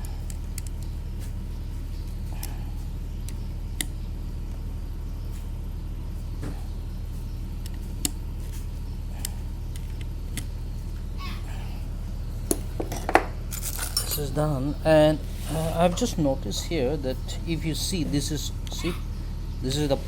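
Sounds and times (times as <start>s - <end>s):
steady low hum: 0.0s - 20.0s
metal tool clicks and clinks: 12.9s - 14.3s.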